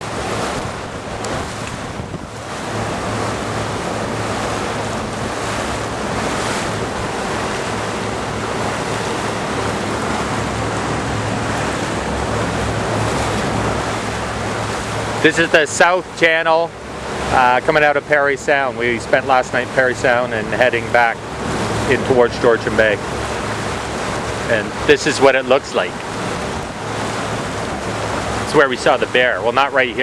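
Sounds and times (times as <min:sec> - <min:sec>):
motorboat engine drone: 0:00.0 - 0:30.0
water rushing past hull: 0:00.0 - 0:30.0
wind buffeting microphone: 0:00.0 - 0:30.0.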